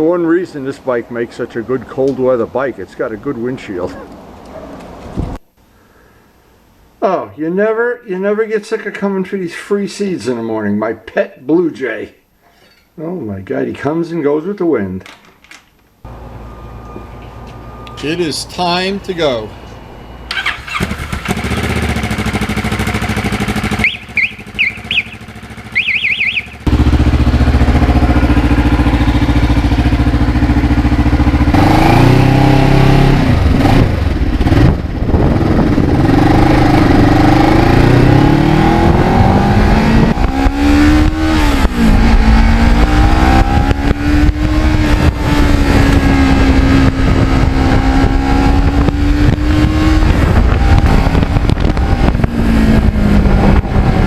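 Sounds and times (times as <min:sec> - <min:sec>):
heavy wind noise: 0:04.9 - 0:05.4, 0:26.6 - 0:54.0
motorcycle engine revving: 0:20.3 - 0:54.0
bird chirping: 0:23.8 - 0:26.6.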